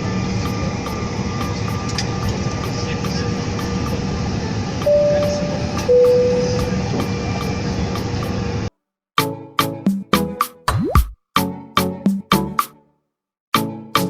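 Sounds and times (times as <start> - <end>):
airliner cabin drone: 0.0 - 8.7
two-note chime: 4.9 - 6.7.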